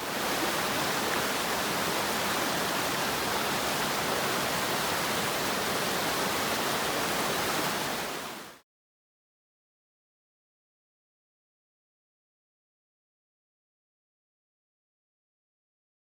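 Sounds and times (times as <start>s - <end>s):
waterfall rushing: 0.0s - 8.6s.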